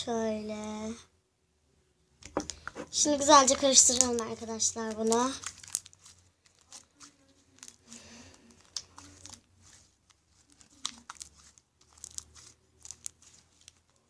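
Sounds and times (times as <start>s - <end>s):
slime sticky clicks and crackles: 3.8s - 7.0s, 8.5s - 14.0s.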